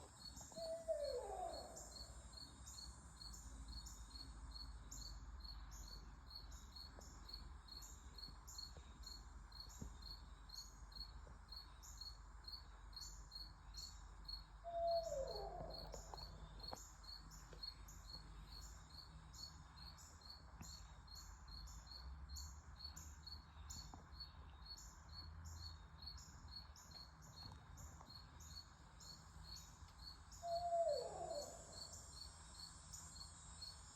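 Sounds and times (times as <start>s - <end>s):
insects chirping: 0.0s - 33.9s
animal call falling in pitch: 14.7s - 16.2s.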